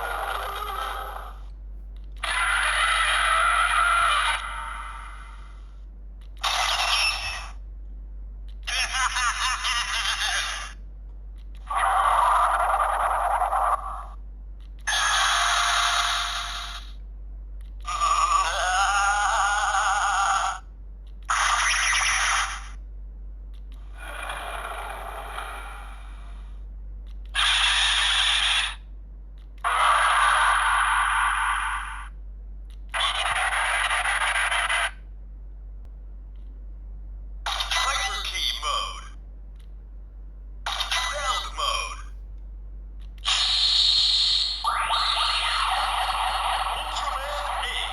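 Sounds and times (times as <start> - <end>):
toy electronic sound effects: 0.0 - 1.4, 6.4 - 7.6, 8.6 - 10.8, 14.8 - 17.0, 17.8 - 20.6, 21.3 - 22.8, 27.3 - 28.8, 37.5 - 39.1, 40.7 - 42.0, 43.2 - 47.9
electronic hissing from toy speaker: 43.2 - 47.9.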